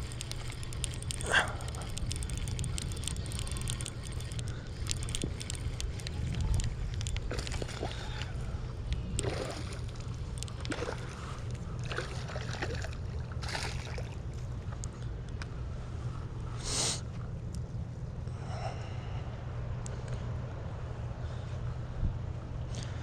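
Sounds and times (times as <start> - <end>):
small clicks: 0.0 - 8.0, 8.8 - 10.8
steady low rumble: 0.0 - 23.0
water splashing: 9.2 - 14.2.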